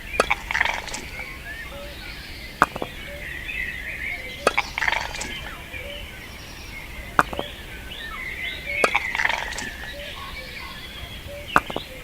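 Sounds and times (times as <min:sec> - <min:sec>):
birds chirping: 0:00.0 - 0:12.0
sharp taps: 0:00.2 - 0:01.2, 0:02.6 - 0:03.0, 0:04.4 - 0:05.5, 0:07.2 - 0:07.6, 0:08.8 - 0:10.3, 0:11.5 - 0:12.0.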